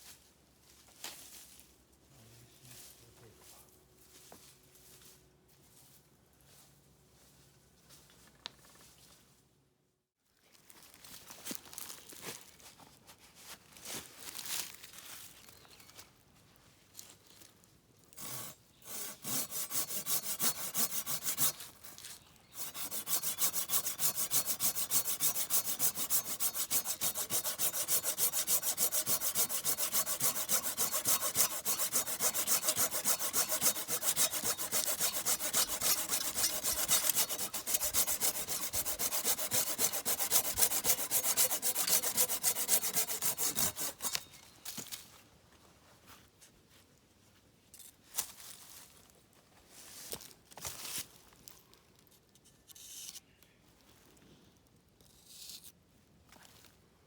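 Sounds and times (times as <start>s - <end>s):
hand saw cutting wood: 18.2s - 44.4s.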